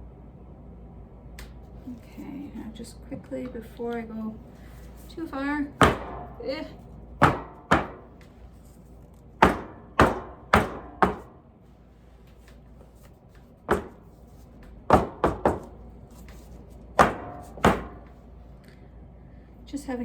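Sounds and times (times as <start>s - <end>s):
soap molds knocking on surface: 5.8s - 6.4s, 7.2s - 8.1s, 9.4s - 11.3s, 13.7s - 14.2s, 14.9s - 15.8s, 17.0s - 18.1s.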